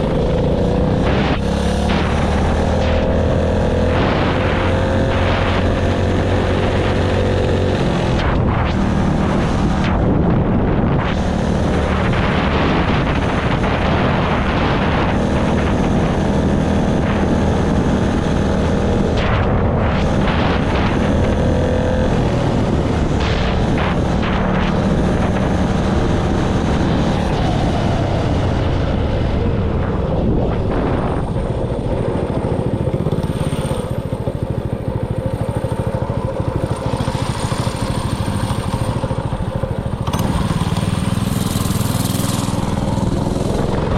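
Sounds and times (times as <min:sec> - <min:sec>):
rushing wind noise: 0:00.0 - 0:43.9
small engine running under load: 0:30.8 - 0:43.9.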